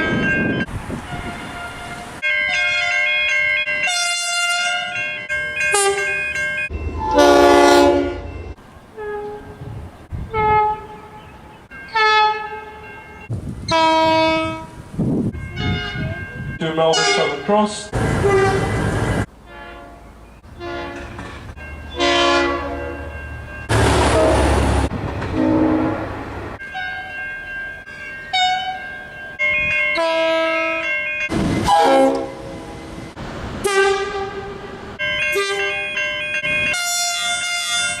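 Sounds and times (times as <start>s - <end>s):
passing train rush: 0.0s - 38.0s
train air horn blasts: 1.1s - 2.9s, 7.0s - 8.4s, 9.0s - 9.6s, 10.2s - 11.3s, 11.9s - 12.8s, 13.7s - 14.8s, 18.2s - 18.8s, 20.6s - 21.2s, 22.0s - 23.0s, 23.8s - 26.2s, 30.0s - 30.8s, 31.6s - 32.7s, 33.6s - 34.7s, 36.8s - 38.0s.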